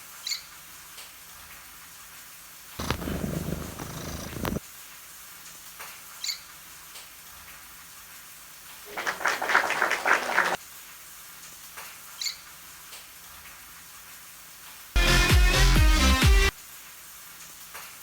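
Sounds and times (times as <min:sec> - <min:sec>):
bird chirping: 0:02.8 - 0:04.6
bird raspy squawk: 0:02.8 - 0:04.6.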